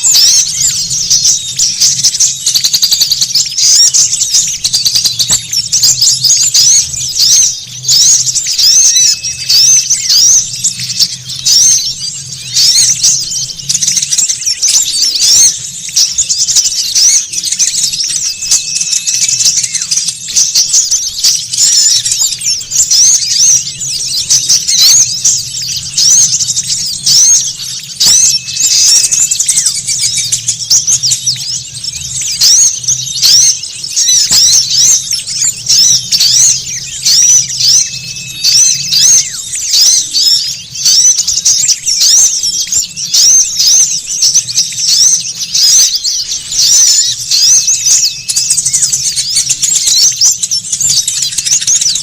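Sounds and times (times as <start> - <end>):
small songbirds twittering: 0.0 - 52.0
thin steady whistle: 16.9 - 22.2.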